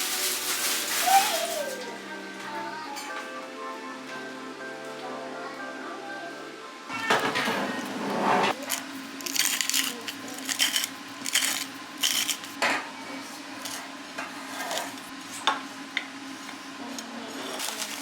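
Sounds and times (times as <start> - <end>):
dishes and cutlery clinking: 7.0 - 12.9.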